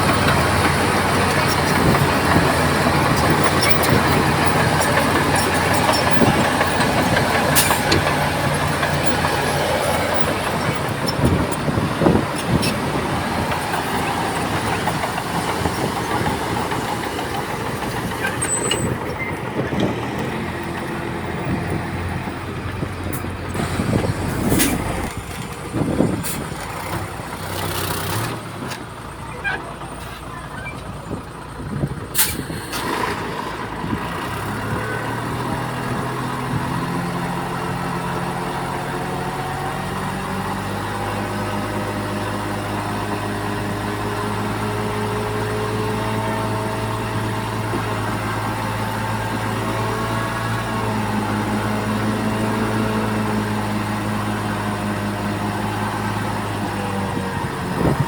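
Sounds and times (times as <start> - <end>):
metal clanks and knocks: 0.0 - 27.0
diesel machinery engines: 0.0 - 58.0.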